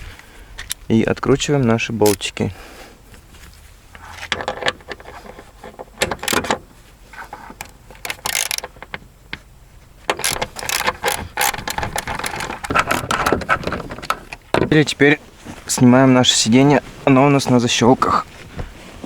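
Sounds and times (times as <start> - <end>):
socket ratchet clicking: 6.0 - 6.6, 7.6 - 9.0, 10.1 - 13.4.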